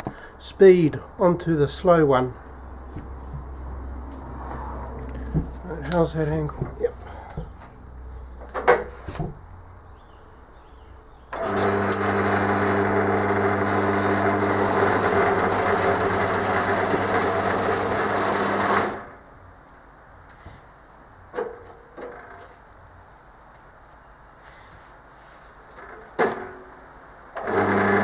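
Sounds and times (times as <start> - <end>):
bandsaw cutting steel: 11.4 - 19.2, 27.4 - 28.0.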